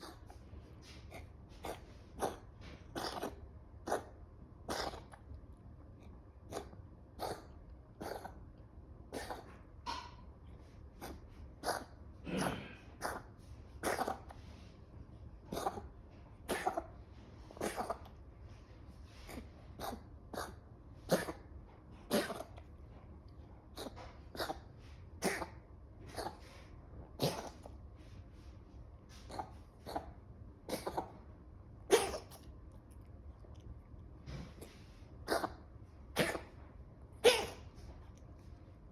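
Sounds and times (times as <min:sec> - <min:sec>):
steady low hum: 0:00.0 - 0:38.9
short coughs: 0:12.2 - 0:13.2.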